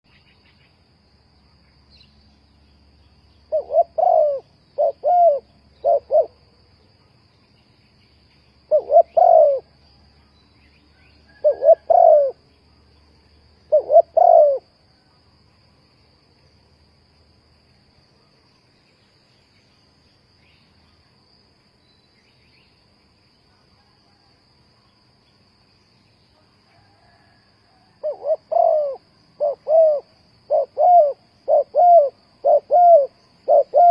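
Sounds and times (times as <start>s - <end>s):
faint high hiss: 0.1s - 33.9s
dove cooing: 3.5s - 6.4s, 8.7s - 9.7s, 11.3s - 12.4s, 13.7s - 14.7s, 26.8s - 33.9s.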